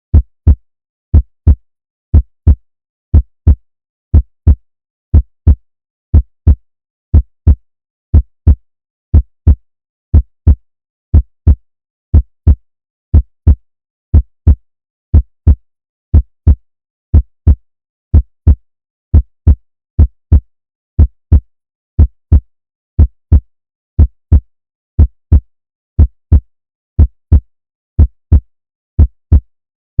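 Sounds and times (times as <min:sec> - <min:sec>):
heart beating: 0:27.0 - 0:27.4, 0:28.0 - 0:28.4, 0:29.0 - 0:29.5.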